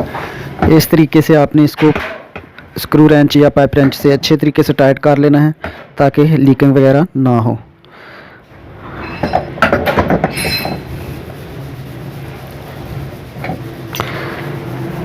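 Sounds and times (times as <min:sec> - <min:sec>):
wrench clinking on metal: 0:10.2 - 0:10.8.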